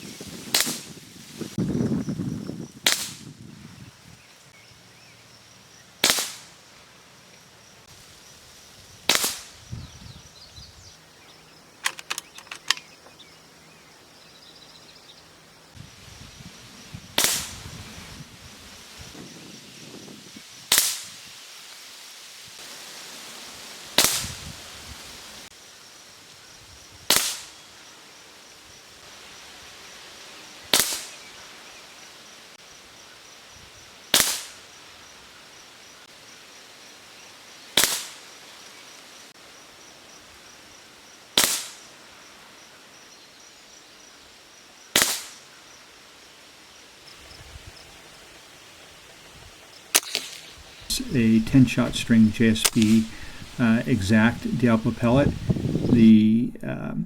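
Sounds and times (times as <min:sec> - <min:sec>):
air rifle firing: 0:11.8 - 0:12.9, 0:45.0 - 0:45.4, 0:49.9 - 0:50.4.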